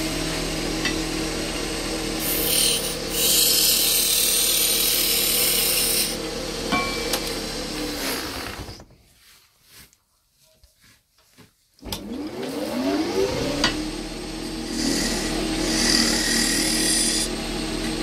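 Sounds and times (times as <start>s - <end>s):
wood lathe motor humming: 0.0s - 8.8s, 11.9s - 18.0s
tool scraping spinning wood: 0.8s - 6.3s, 14.5s - 17.3s.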